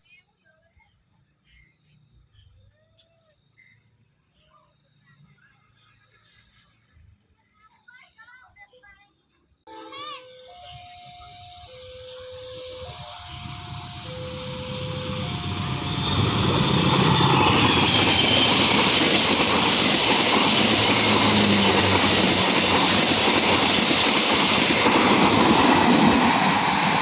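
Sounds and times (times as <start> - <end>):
train passing close by: 9.7 - 27.0.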